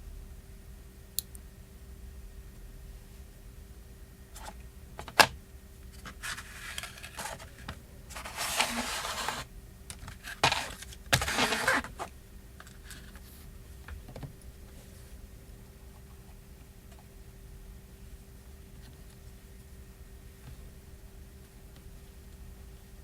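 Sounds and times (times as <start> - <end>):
scraping and rustling of parts: 5.9 - 13.4.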